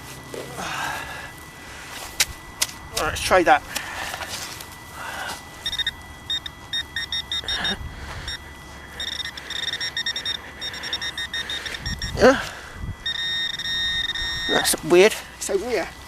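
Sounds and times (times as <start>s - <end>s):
metal detector beeping: 5.4s - 15.9s.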